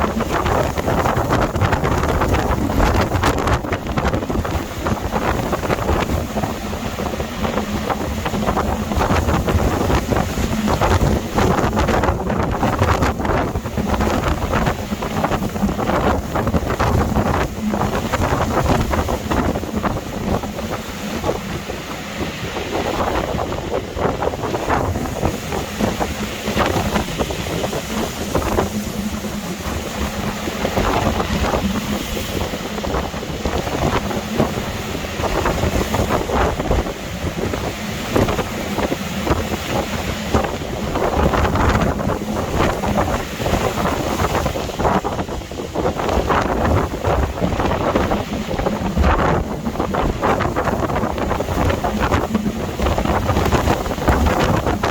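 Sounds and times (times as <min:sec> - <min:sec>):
storm wind buffeting microphone: 0:00.0 - 0:54.9.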